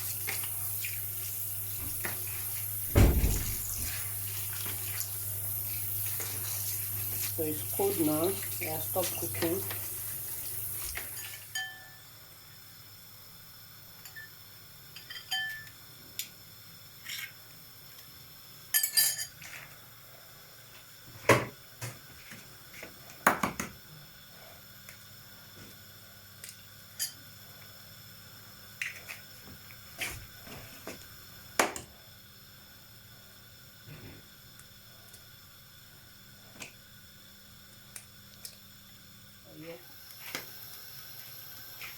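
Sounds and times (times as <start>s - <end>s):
running tap water: 0.0s - 11.6s
dishes and pots clinking: 11.2s - 12.0s, 15.0s - 15.8s, 18.7s - 19.4s.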